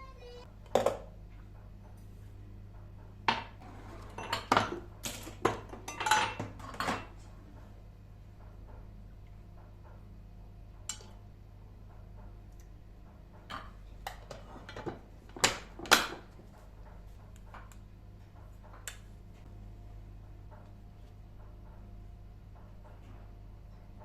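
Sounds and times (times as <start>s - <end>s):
steady low hum: 0.0s - 24.0s
dishes and utensils clinking: 3.3s - 7.2s, 13.5s - 16.2s.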